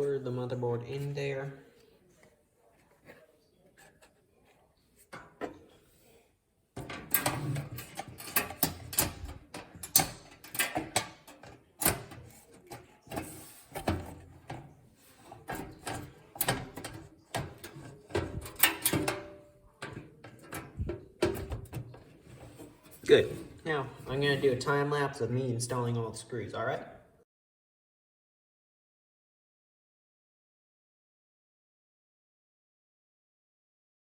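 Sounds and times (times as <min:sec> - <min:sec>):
clicks and knocks of computer parts: 0:06.8 - 0:14.8, 0:15.4 - 0:22.7
metal and plastic scraping: 0:06.8 - 0:24.9.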